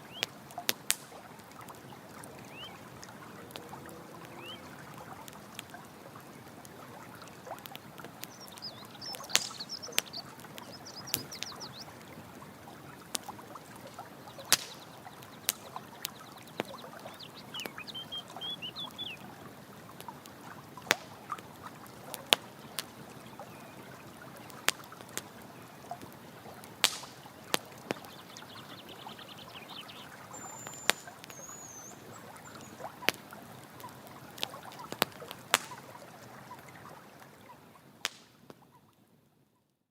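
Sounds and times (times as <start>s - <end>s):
campfire crackling and popping: 0.0s - 39.0s
running water: 0.0s - 39.0s
bird chirps: 2.4s - 2.8s, 4.2s - 4.8s, 8.2s - 12.0s, 14.2s - 19.3s, 27.8s - 32.9s.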